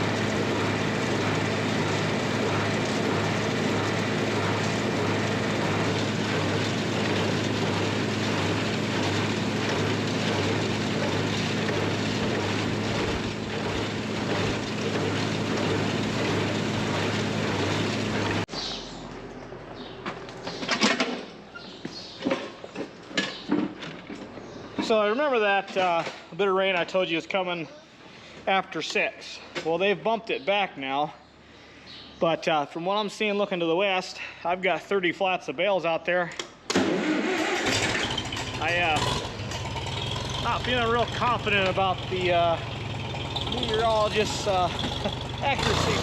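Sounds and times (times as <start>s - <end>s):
farm machinery engine running: 0.0s - 18.5s, 36.8s - 46.0s.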